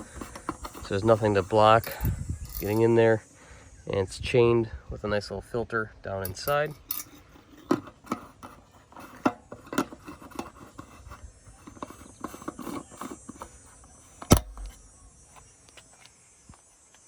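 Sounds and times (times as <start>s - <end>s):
plastic and metal clicks: 0.0s - 2.8s, 7.6s - 14.8s.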